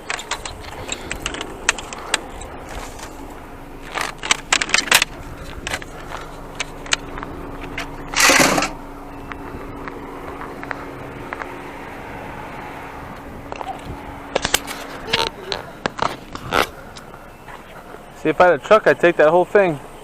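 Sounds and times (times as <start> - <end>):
rustling crash: 7.6 - 8.8.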